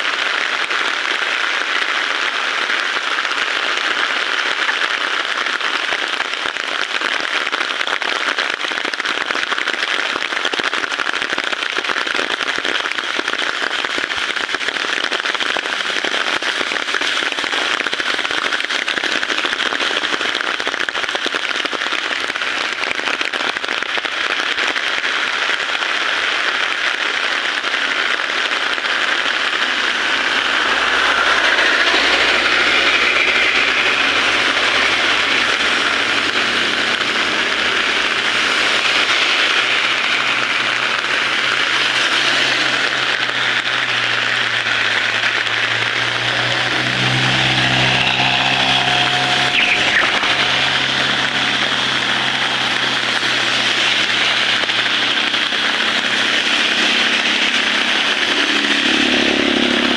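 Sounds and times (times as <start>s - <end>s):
heavy rain falling: 22.4s - 59.9s
vehicle engine hum: 26.9s - 59.9s.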